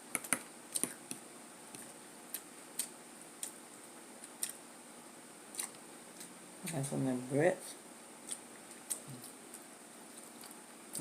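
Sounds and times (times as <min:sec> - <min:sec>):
person chewing food: 0:01.7 - 0:03.6, 0:04.2 - 0:04.6, 0:05.5 - 0:06.4, 0:08.2 - 0:11.0.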